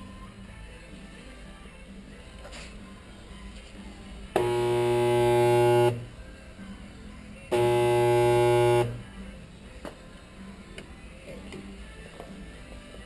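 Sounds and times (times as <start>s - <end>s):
spot welder electrical buzz: 4.4s - 6.1s, 7.5s - 9.1s.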